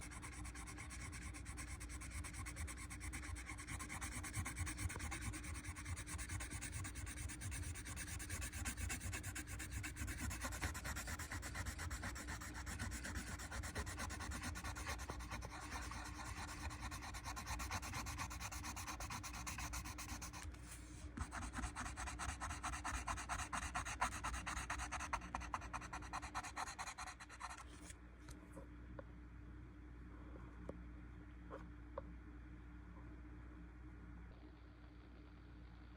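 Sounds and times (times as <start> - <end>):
colored pencil shading on paper: 0.0 - 20.5, 21.2 - 27.7
faint steady hum: 0.0 - 35.9.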